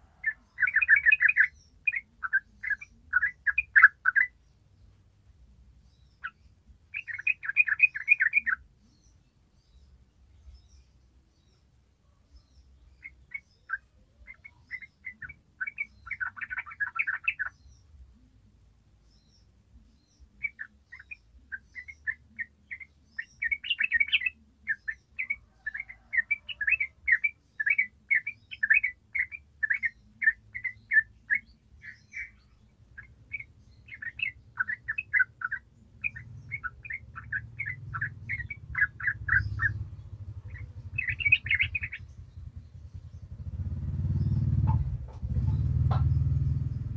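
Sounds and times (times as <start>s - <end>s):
bulbul chirping: 0.2s - 4.4s, 6.1s - 8.6s, 12.9s - 17.8s, 20.0s - 46.9s
low rumble: 36.2s - 46.9s.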